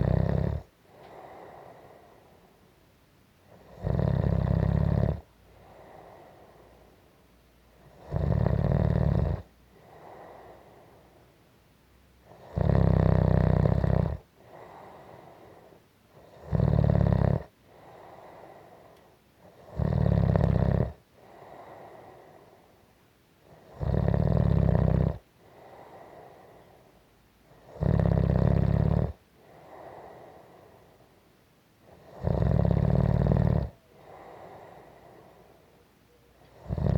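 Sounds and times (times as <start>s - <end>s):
loud buzzing snores: 0.0s - 2.2s, 3.5s - 6.4s, 7.8s - 10.8s, 12.3s - 22.5s, 23.5s - 26.7s, 27.5s - 30.8s, 31.9s - 35.5s, 36.5s - 36.9s
soft breathing: 0.7s - 2.8s, 5.2s - 8.0s, 9.4s - 11.4s, 14.2s - 16.5s, 17.5s - 19.7s, 20.9s - 23.8s, 25.2s - 27.8s, 29.1s - 32.2s, 32.9s - 36.7s.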